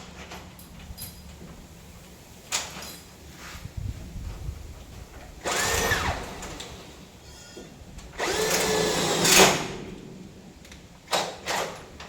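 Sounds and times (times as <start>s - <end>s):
power drill whine: 5.4s - 6.8s, 8.2s - 9.7s.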